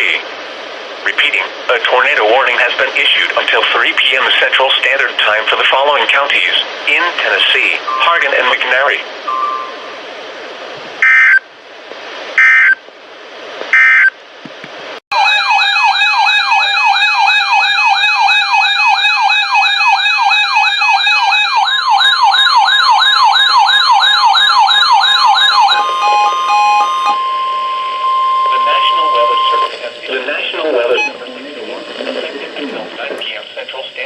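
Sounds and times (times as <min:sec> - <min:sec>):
electronic siren wailing: 0:07.8 - 0:10.0, 0:11.0 - 0:11.4, 0:15.1 - 0:31.2
warbling digital data tones: 0:07.8 - 0:10.0, 0:24.1 - 0:32.4
steady single alert tone: 0:07.9 - 0:08.6, 0:09.3 - 0:10.0, 0:25.7 - 0:29.7.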